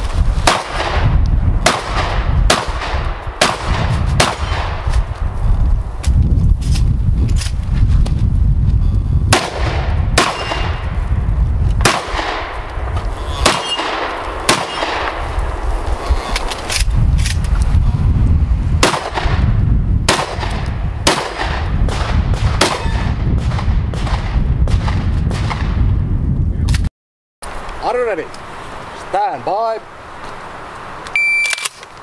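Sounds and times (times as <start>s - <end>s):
shotgun shots ringing: 0.4s - 4.8s, 9.3s - 10.8s, 11.8s - 12.5s, 13.4s - 15.2s, 18.8s - 19.4s, 20.1s - 25.7s.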